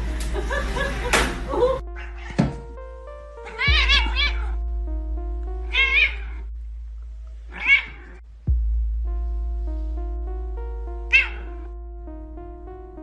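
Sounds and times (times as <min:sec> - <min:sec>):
background music: 0:00.0 - 0:13.0
cat meowing: 0:01.9 - 0:02.6, 0:03.4 - 0:04.6, 0:05.6 - 0:06.4, 0:07.5 - 0:08.2.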